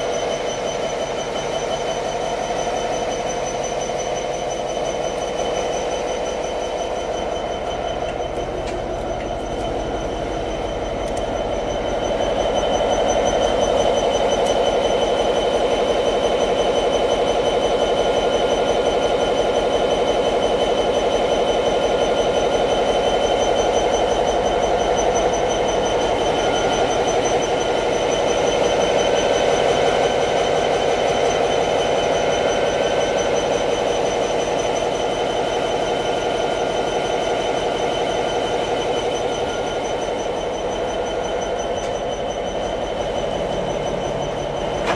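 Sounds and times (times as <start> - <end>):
high whine: 0.0 - 16.5, 36.4 - 44.9
diesel locomotive engine running: 0.0 - 44.9.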